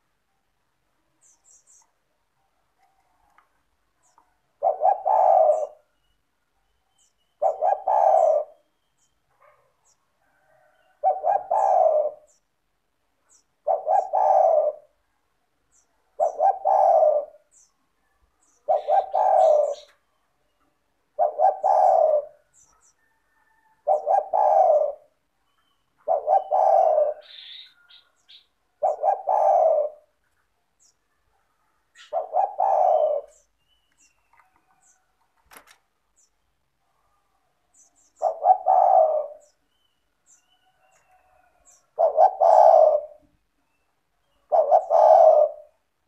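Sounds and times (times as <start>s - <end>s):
small birds chirping: 1.0s - 2.2s, 2.8s - 45.8s
dove cooing: 4.0s - 6.0s, 7.4s - 8.8s, 9.4s - 12.4s, 13.6s - 15.0s, 16.1s - 17.6s, 18.4s - 20.1s, 21.1s - 25.3s, 26.0s - 30.3s, 31.8s - 33.5s, 38.0s - 39.8s, 40.6s - 43.4s, 44.2s - 45.9s.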